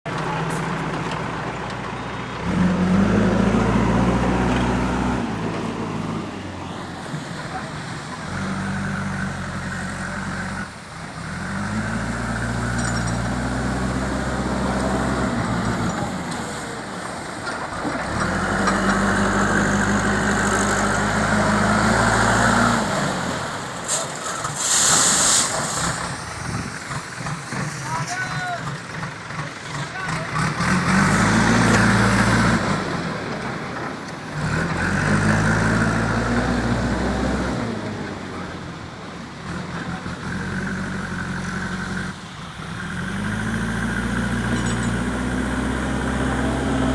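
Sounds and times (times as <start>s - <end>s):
diesel engine running: 0.1s - 46.9s
hiss bursts: 23.8s - 26.8s.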